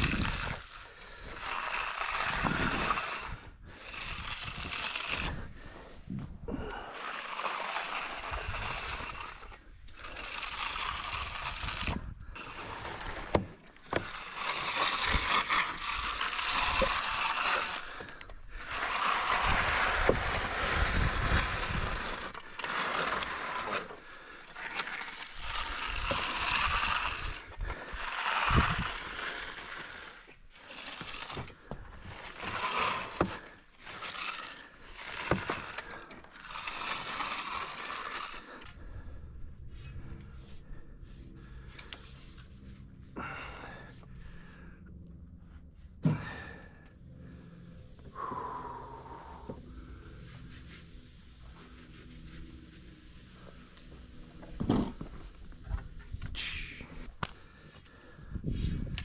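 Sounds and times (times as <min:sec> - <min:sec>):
hand tool scraping wet concrete: 0:00.0 - 0:42.6, 0:47.3 - 0:59.0.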